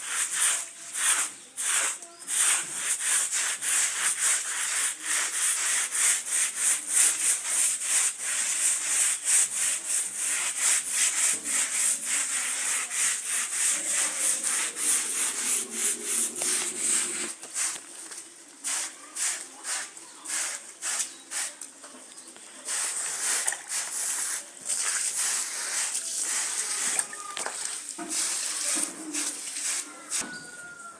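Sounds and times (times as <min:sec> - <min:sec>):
brush scrubbing carpet: 0:00.0 - 0:17.8, 0:22.7 - 0:26.9, 0:28.1 - 0:30.2.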